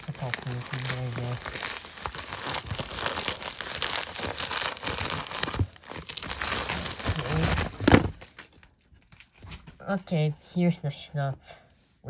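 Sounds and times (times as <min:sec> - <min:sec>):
packaging crinkling and tearing: 0:00.0 - 0:09.6.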